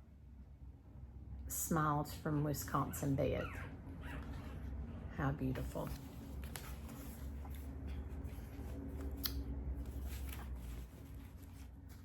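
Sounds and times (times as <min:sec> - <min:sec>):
paper cards rustling: 0:05.5 - 0:12.0.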